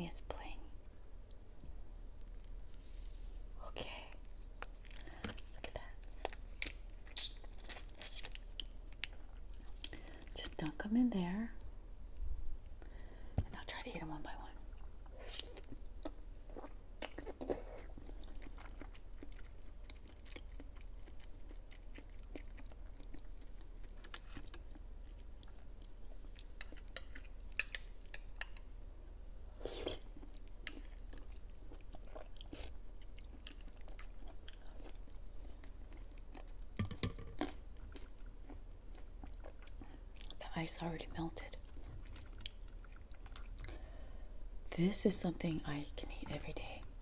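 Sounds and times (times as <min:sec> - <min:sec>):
chewing soft jelly: 0:14.5 - 0:36.8, 0:37.4 - 0:40.4, 0:41.3 - 0:44.1.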